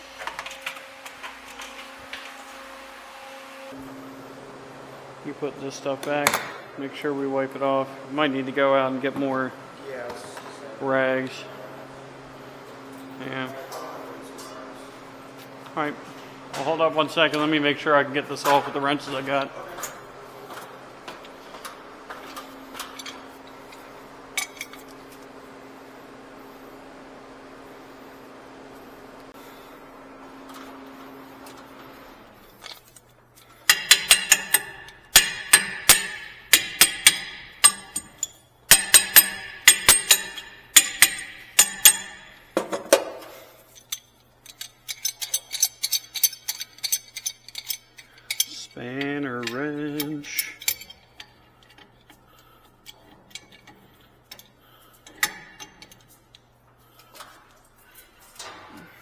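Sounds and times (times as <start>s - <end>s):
steady low hum: 0.0s - 59.0s
metal wrenches clinking: 22.3s - 25.0s, 32.5s - 59.0s.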